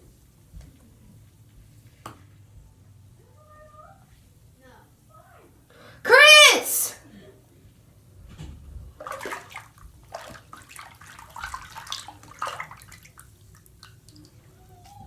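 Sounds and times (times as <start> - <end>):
bathwater sloshing and splashing: 8.8 - 14.6.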